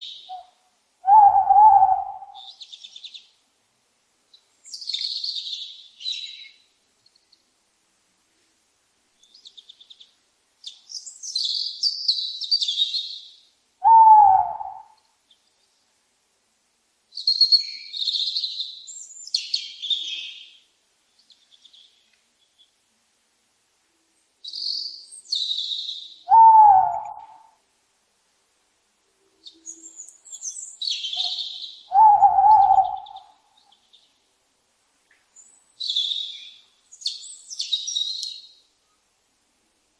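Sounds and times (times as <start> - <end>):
owl calling: 0.0 - 3.2, 11.3 - 15.0, 24.5 - 27.6, 29.3 - 33.8, 35.8 - 38.5
songbirds singing: 0.0 - 3.6, 4.2 - 7.6, 9.1 - 16.0, 17.1 - 22.9, 24.2 - 27.5, 29.1 - 34.4, 35.0 - 39.2.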